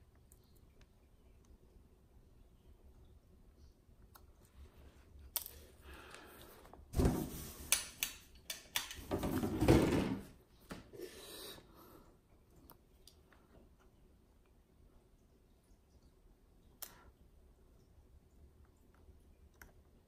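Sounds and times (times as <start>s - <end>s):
objects knocking and scraping on workbench: 7.0s - 7.8s, 9.0s - 10.3s.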